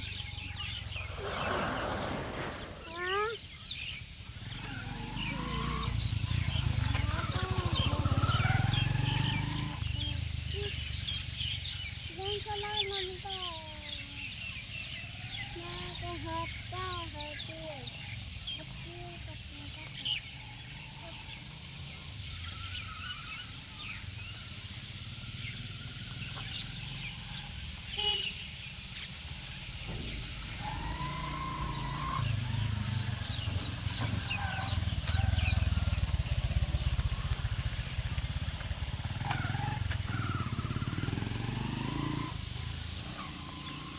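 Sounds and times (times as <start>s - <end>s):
small birds chirping: 0.0s - 43.9s
low rumble: 0.4s - 3.0s.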